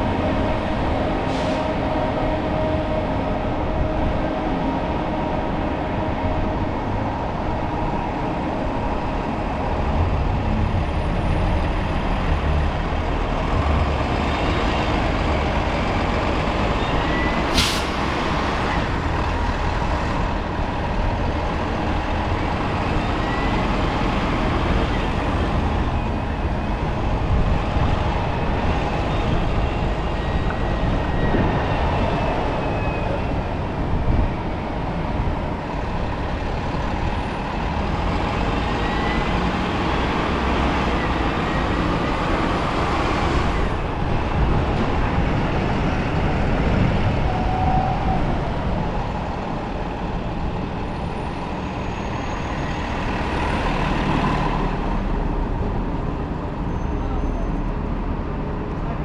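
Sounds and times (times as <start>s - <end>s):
sharp hiss of air: 17.5s - 18.0s.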